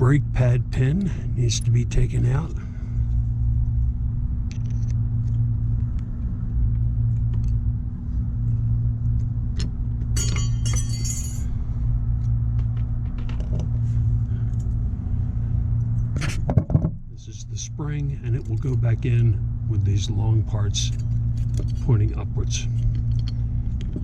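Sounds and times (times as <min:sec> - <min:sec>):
steady low hum: 0:00.0 - 0:24.0
metal jingle: 0:10.2 - 0:11.5
small metallic clicks: 0:22.7 - 0:24.0.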